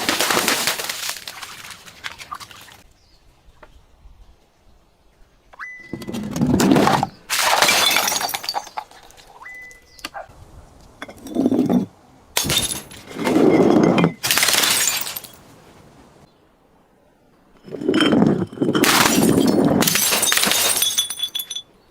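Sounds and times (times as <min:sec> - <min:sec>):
glass bottles crushing and shattering: 0:06.8 - 0:09.3, 0:11.0 - 0:15.4, 0:17.6 - 0:21.7
high clinks of glass: 0:18.8 - 0:21.7.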